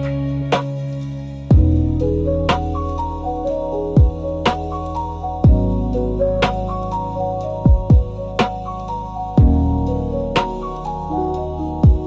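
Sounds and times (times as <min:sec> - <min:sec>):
smooth jazz lounge music: 0:00.0 - 0:12.0
deep kick drum: 0:01.5 - 0:01.9, 0:04.0 - 0:04.3, 0:05.4 - 0:05.8, 0:07.7 - 0:08.2, 0:09.4 - 0:09.7.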